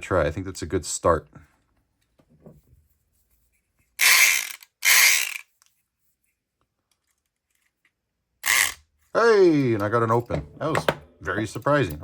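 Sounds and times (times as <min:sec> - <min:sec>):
electric lock pick buzzing: 0:04.0 - 0:05.4.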